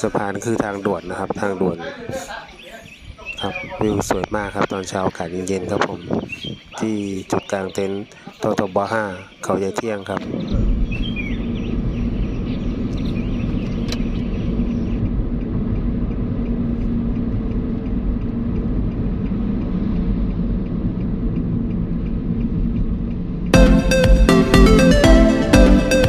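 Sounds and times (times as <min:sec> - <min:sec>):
car driving on road: 0:10.2 - 0:23.6.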